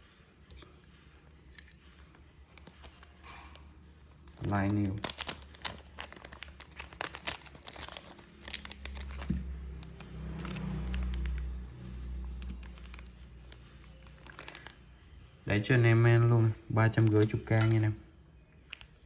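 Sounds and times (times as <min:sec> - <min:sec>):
plastic wrapping crinkling: 0:02.2 - 0:14.9, 0:16.8 - 0:18.0.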